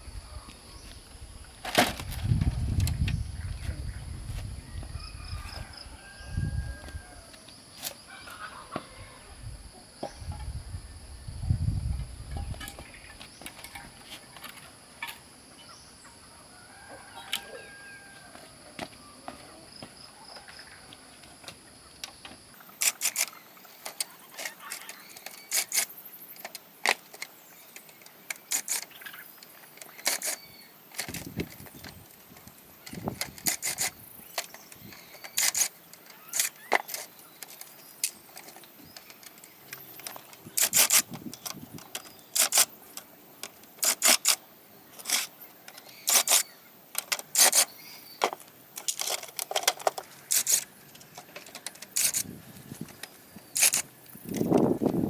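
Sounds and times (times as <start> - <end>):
hand tools clicking and clinking: 22.7 - 54.9.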